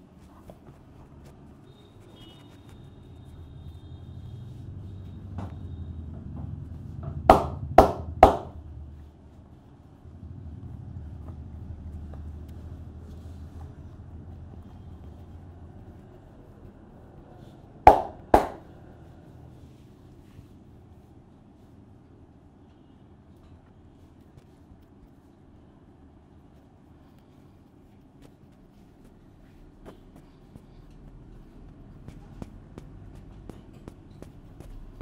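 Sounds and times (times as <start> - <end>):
low steady rumble: 2.8 - 35.0
hand slaps on head: 17.9 - 18.6.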